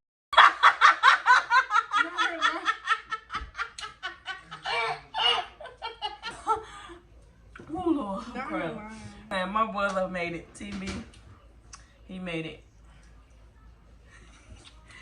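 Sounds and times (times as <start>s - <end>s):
person laughing hard: 3.4s - 6.4s.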